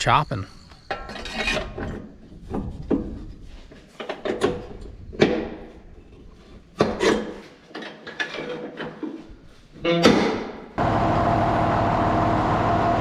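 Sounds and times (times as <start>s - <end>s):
knocks and clattering: 0.9s - 9.2s.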